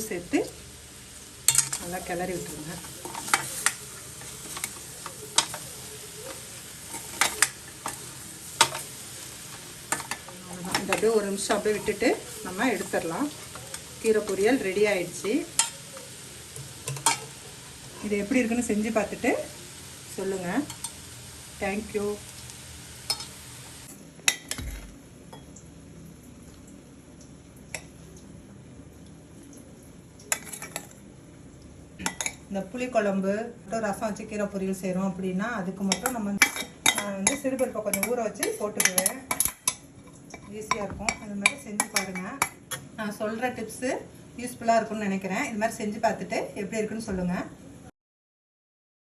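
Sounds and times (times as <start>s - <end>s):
greens sizzling: 0.0s - 24.9s
faint frying hiss: 0.0s - 47.9s
metal utensils clinking: 1.5s - 19.4s, 20.4s - 21.1s, 23.0s - 23.6s.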